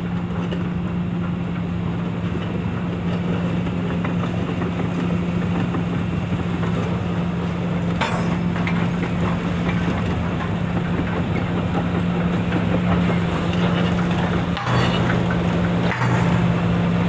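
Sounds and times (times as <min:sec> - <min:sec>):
excavator diesel engine running: 0:00.0 - 0:17.0
light metallic clanks: 0:07.8 - 0:17.0.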